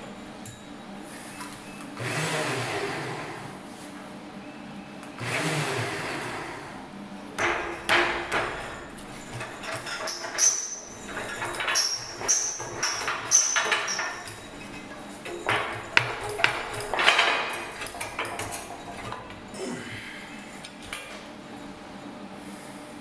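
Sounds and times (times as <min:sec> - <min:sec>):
metallic clanks and knocks: 0:07.4 - 0:19.7.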